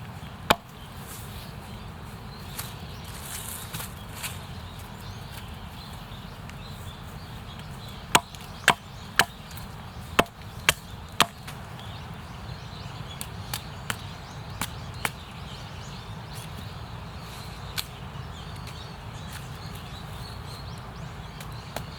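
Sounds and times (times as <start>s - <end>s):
wood chopping blows: 0.5s - 0.8s, 8.1s - 9.6s, 10.2s - 11.6s.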